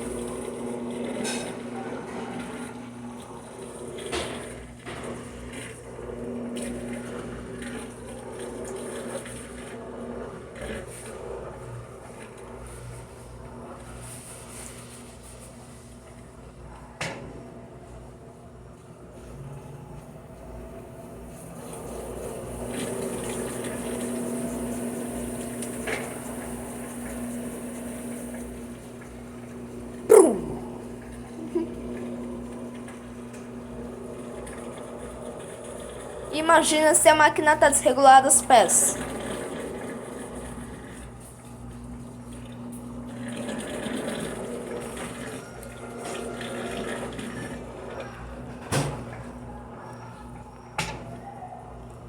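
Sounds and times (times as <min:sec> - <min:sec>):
washing machine humming: 0:00.0 - 0:52.0
short loud falling cry: 0:30.1 - 0:30.8.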